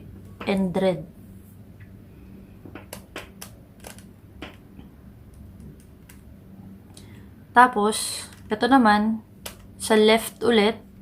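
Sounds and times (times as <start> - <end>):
low steady hum: 0.0 - 11.0.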